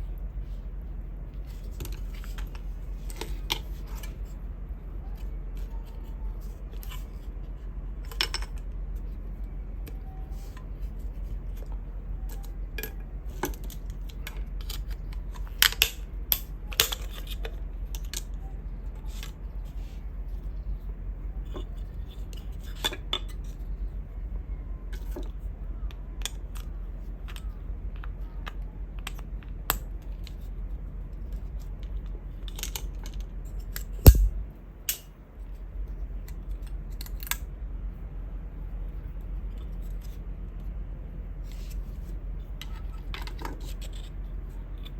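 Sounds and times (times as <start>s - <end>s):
steady low hum: 34.0s - 34.6s
dull thud knock: 34.1s - 34.4s.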